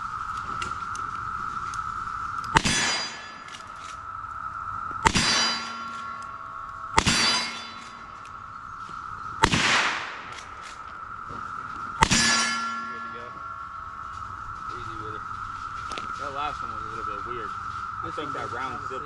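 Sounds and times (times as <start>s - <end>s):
metallic clang of steel target: 2.6s - 3.6s, 5.0s - 6.4s, 7.0s - 8.2s, 12.0s - 13.4s.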